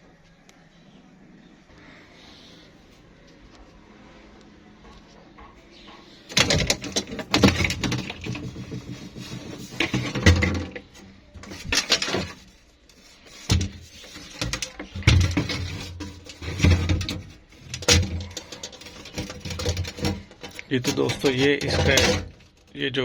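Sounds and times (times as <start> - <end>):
hands scraping and thumping metal plate: 6.2 - 22.7.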